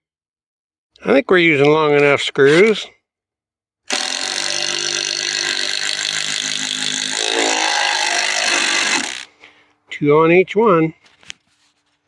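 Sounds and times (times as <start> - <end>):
power drill driving screw into wood: 3.9 - 9.3.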